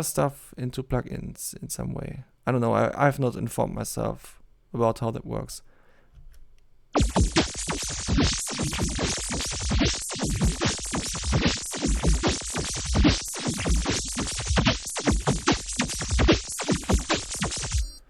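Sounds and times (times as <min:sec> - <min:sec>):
pitched glittery drum loop: 0:07.0 - 0:18.0.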